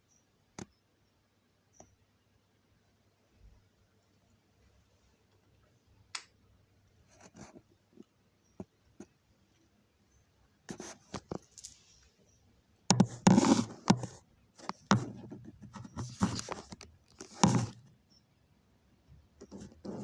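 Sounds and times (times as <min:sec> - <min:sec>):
rustling or scraping: 0:10.7 - 0:12.1, 0:12.9 - 0:17.9
knocks and clatters: 0:12.9 - 0:17.8.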